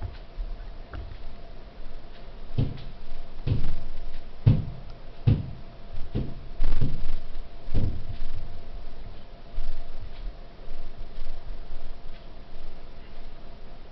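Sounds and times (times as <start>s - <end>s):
faint steady hum: 0.0s - 13.9s
dull knocking thuds: 2.6s - 3.8s, 4.4s - 8.3s.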